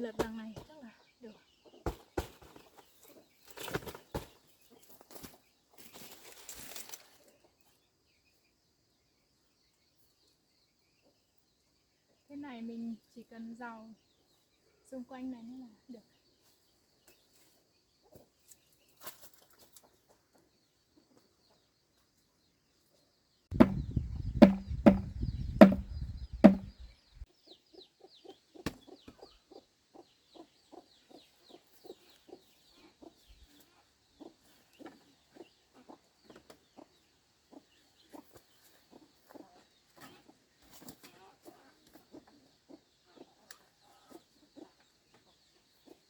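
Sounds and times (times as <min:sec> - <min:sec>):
tool knocking on wood: 0:23.5 - 0:26.9
chicken clucking: 0:36.7 - 0:46.0.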